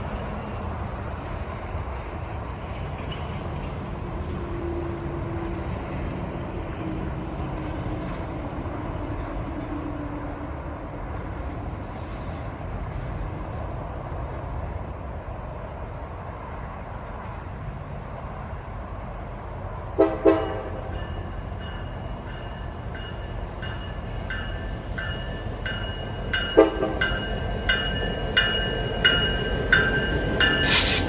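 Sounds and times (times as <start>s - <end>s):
diesel locomotive engine rumble: 0.0s - 31.0s.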